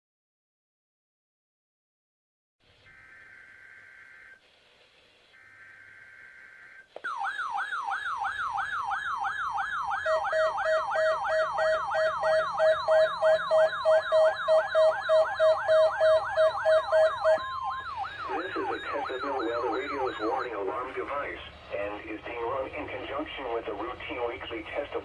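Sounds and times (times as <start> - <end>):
faint buzzy data bursts: 2.6 - 25.0
warbling alarm siren: 2.8 - 4.4, 5.3 - 25.0
pulsing beep: 10.0 - 21.0.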